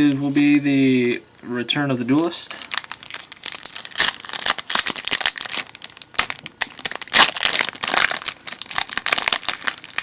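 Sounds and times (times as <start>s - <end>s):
foil wrapper crinkling: 2.2s - 10.0s.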